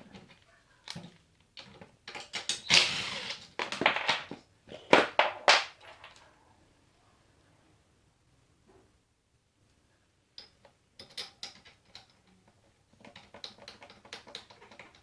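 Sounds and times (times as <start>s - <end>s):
hand tools and metal parts clacking: 0.0s - 5.2s, 10.4s - 15.0s.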